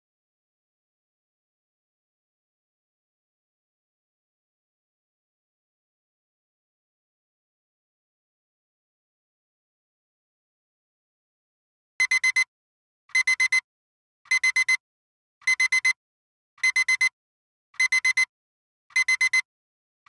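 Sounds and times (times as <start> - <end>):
alarm clock beeping: 12.0 - 12.5, 13.2 - 13.6, 14.3 - 14.8, 15.5 - 16.0, 16.6 - 17.1, 17.8 - 18.3, 18.9 - 19.4.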